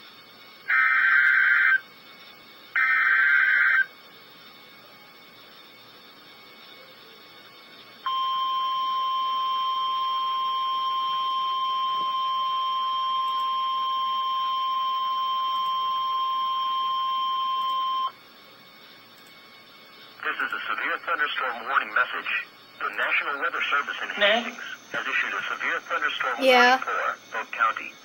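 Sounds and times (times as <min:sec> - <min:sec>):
faint hiss: 0:18.2 - 0:28.0.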